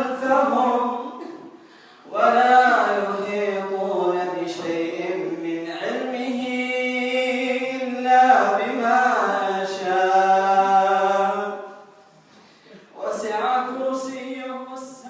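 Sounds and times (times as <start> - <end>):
man chanting unaccompanied: 2.1 - 11.8, 12.9 - 15.0.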